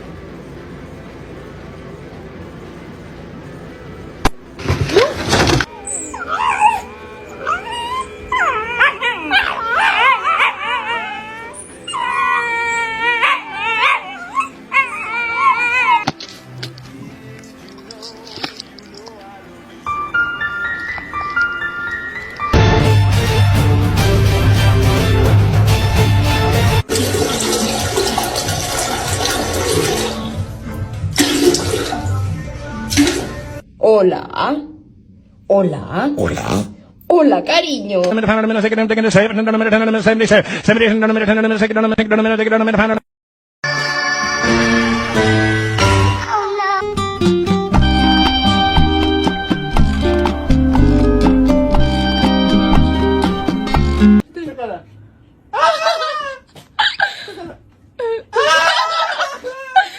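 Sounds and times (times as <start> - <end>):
dog howling and whining: 5.7 - 16.1.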